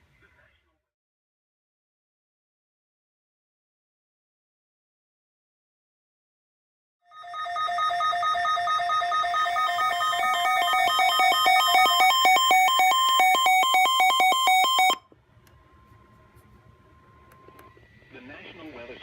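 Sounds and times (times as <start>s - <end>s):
electronic emergency alert tone: 7.1s - 15.1s.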